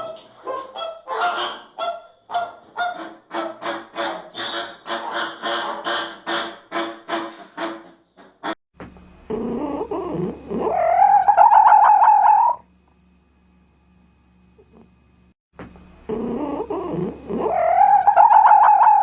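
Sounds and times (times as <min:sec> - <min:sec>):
goose-like honks: 0:00.0 - 0:08.6
animal wavering call: 0:09.3 - 0:12.6, 0:16.1 - 0:19.0.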